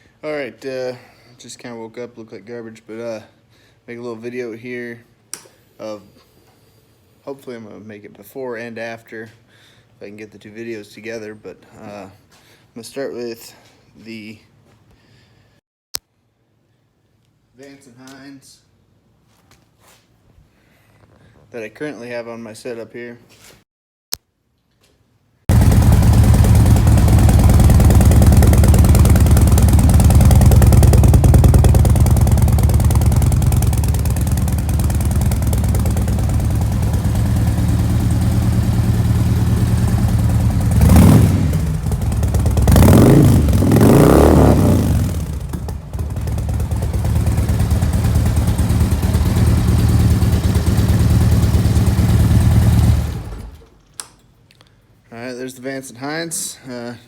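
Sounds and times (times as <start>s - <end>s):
motorcycle engine idling and revving: 25.5s - 53.6s.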